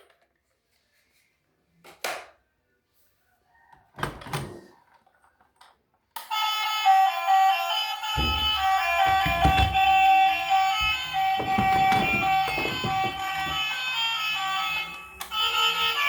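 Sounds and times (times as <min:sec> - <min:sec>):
music: 0:07.1 - 0:16.0.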